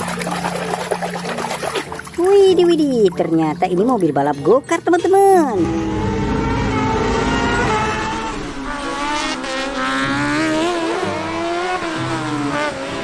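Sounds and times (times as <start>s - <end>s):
race car engine running: 5.6s - 13.0s.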